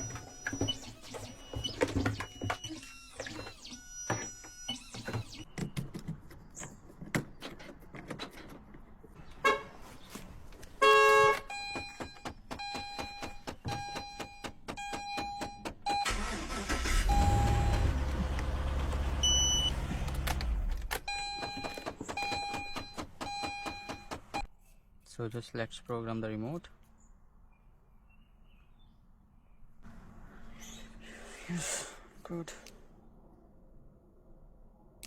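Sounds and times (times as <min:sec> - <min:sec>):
car warning chime: 0:11.4 - 0:18.1.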